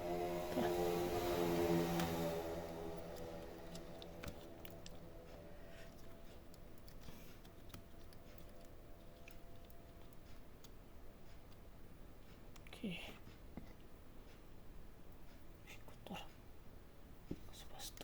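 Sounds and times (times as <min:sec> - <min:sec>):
steady hum: 0:00.0 - 0:13.0.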